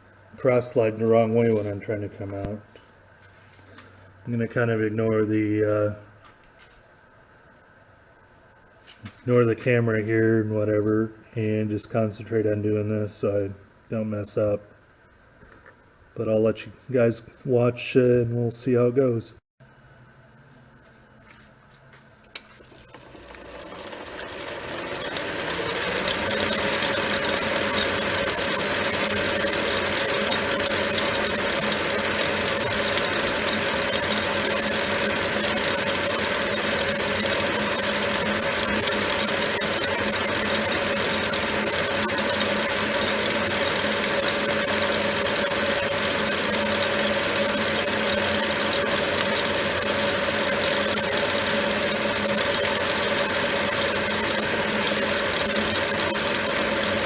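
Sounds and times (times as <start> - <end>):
lathe motor running: 22.6 - 57.0.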